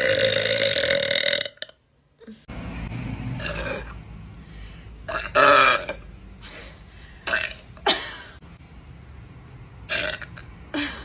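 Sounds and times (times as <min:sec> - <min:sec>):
woman belching: 0:00.0 - 0:01.8, 0:05.1 - 0:06.0, 0:09.9 - 0:10.5.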